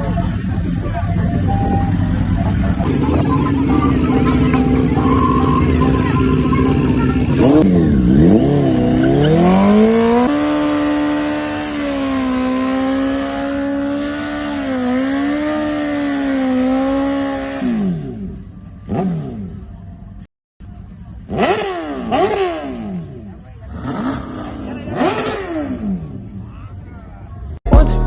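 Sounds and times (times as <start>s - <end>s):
truck engine revving: 2.8s - 10.0s.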